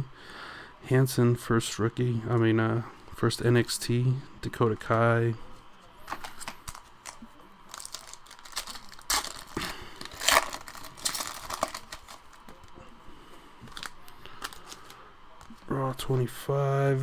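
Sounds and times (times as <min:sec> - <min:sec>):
plastic wrapper crinkling and tearing: 0:06.1 - 0:12.8, 0:13.6 - 0:15.7.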